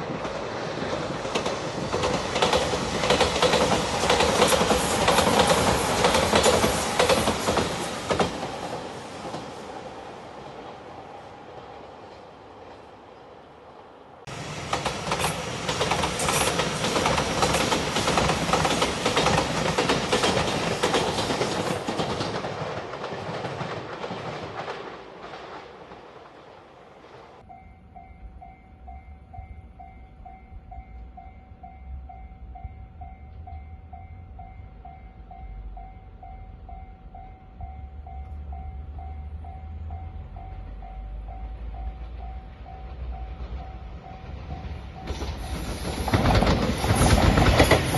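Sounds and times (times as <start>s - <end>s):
train wheels rushing on rails: 0.0s - 27.5s, 37.6s - 47.9s.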